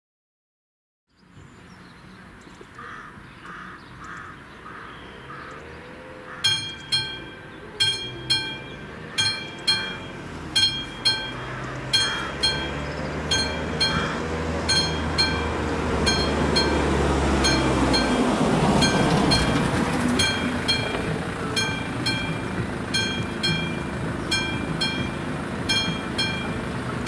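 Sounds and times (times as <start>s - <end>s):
train engine rumble: 5.2s - 27.0s
train passing: 5.2s - 27.0s
level crossing warning bell: 6.4s - 27.0s.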